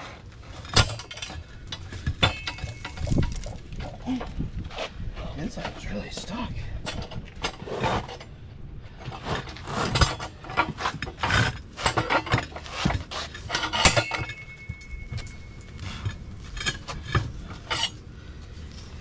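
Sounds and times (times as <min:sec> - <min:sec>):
crowbar clanking on wheel rim: 0:00.5 - 0:04.4, 0:09.0 - 0:18.0.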